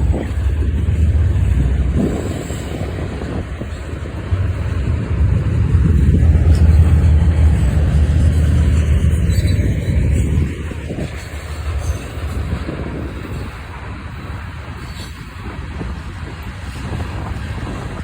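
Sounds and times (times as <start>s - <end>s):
diesel locomotive passing: 0.0s - 18.0s.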